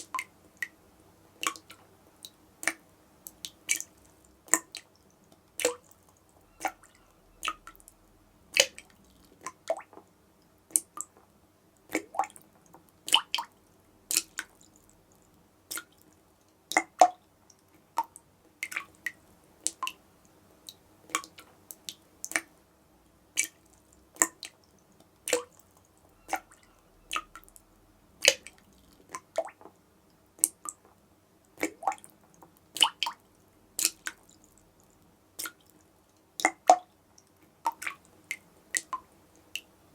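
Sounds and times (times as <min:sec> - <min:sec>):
water drops dripping from tap: 0:01.4 - 0:04.9, 0:05.6 - 0:07.9, 0:08.6 - 0:10.0, 0:16.7 - 0:17.2, 0:20.7 - 0:22.5, 0:24.2 - 0:24.6, 0:25.3 - 0:25.6, 0:26.2 - 0:27.6, 0:28.2 - 0:29.7, 0:30.4 - 0:30.8.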